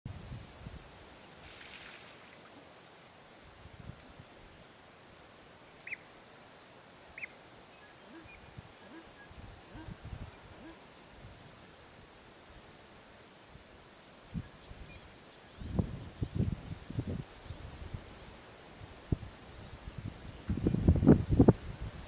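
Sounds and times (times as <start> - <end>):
soft low quacking calls: 8.1 - 9.1, 10.6 - 10.8.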